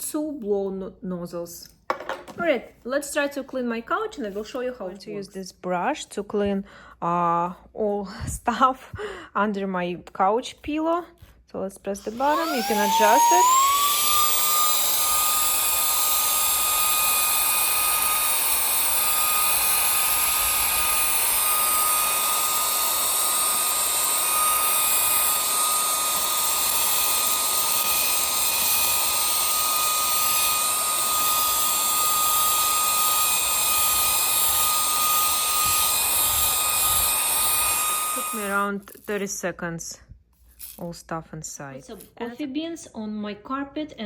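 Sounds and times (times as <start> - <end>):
handheld vacuum running: 12.0 - 38.8.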